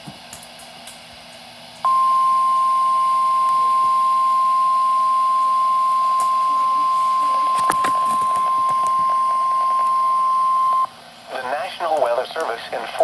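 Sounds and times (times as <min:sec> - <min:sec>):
steady warning alarm tone: 0:01.9 - 0:11.0.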